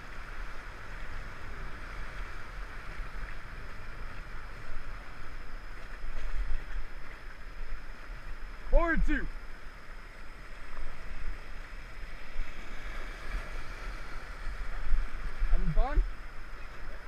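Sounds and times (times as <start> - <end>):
wind rumble on microphone: 9.4 - 17.0.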